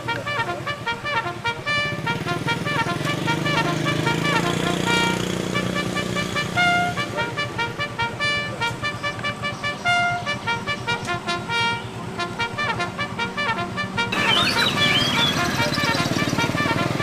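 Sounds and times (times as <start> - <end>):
songbirds singing: 8.2 - 12.8, 14.1 - 16.9.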